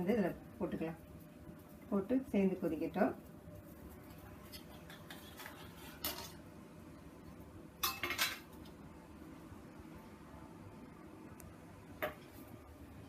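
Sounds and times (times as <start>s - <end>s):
metal spoon clinking on a pot: 7.8s - 8.4s.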